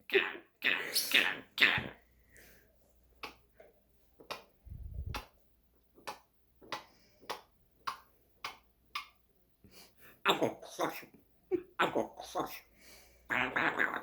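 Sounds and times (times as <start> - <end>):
parrot making sharp clicks: 6.0 - 9.2.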